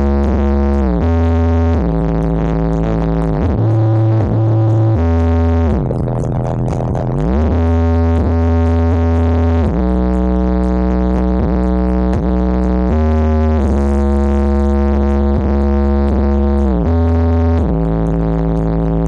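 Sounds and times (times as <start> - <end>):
electronic music with droning bass: 0.0 - 19.0.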